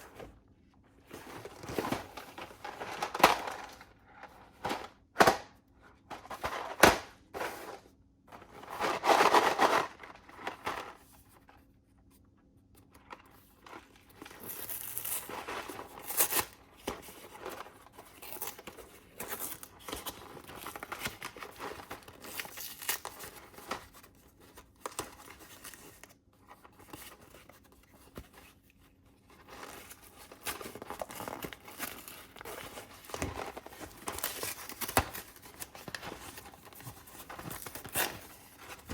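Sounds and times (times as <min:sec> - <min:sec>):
packaging crackling and rustling: 0:01.0 - 0:05.4, 0:06.2 - 0:11.1, 0:13.0 - 0:38.9
food packaging tearing: 0:18.0 - 0:23.6.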